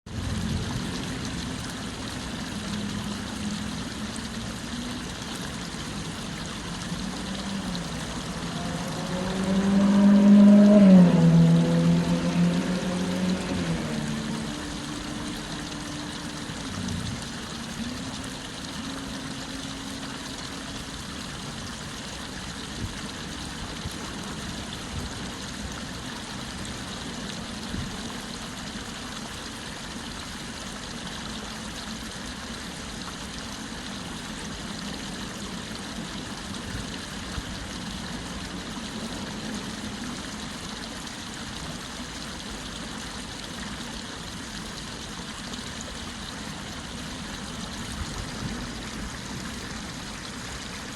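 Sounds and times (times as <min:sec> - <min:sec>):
car traffic hum: 0:00.1 - 0:20.5, 0:45.7 - 0:50.9
stream water running: 0:00.1 - 0:50.9.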